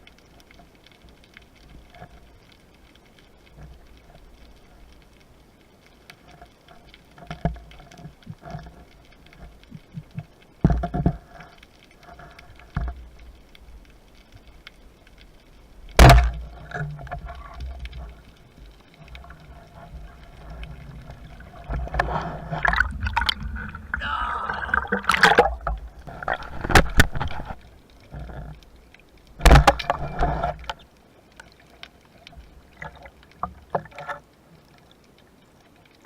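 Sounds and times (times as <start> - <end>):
low rumbling water noise: 0.0 - 36.0
underwater clicks and knocks: 6.1 - 15.2, 15.9 - 34.3
heavy thumps: 16.0 - 16.4
loud sharp crack: 16.0 - 16.4.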